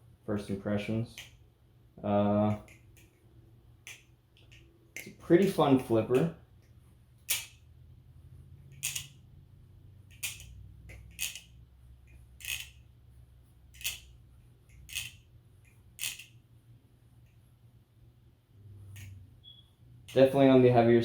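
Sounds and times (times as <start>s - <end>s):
balisong handles clicking: 1.1s - 1.4s, 2.5s - 5.2s, 8.6s - 9.3s, 10.0s - 12.9s, 13.7s - 16.4s.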